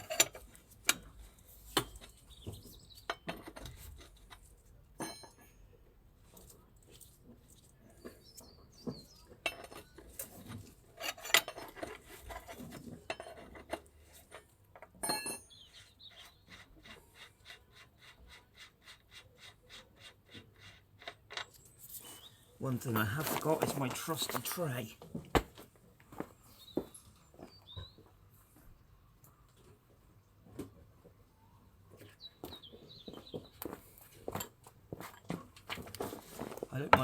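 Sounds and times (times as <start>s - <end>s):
metal tools clinking: 0.0s - 0.5s, 9.4s - 15.5s, 22.7s - 24.9s.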